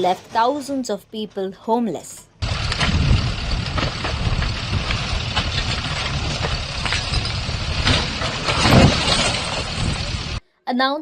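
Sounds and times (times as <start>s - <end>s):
heavy machinery diesel engine: 2.4s - 10.4s
knocks and clatters: 2.4s - 10.4s.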